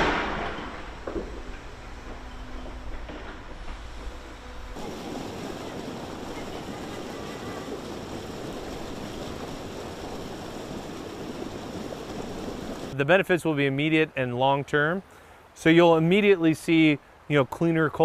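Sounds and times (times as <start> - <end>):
low hum: 0.0 - 13.0
river water rushing: 4.2 - 13.0.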